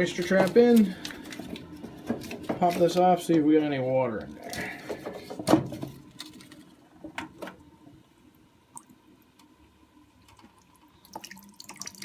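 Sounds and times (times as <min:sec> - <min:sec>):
water dripping and trickling: 0:08.4 - 0:12.0.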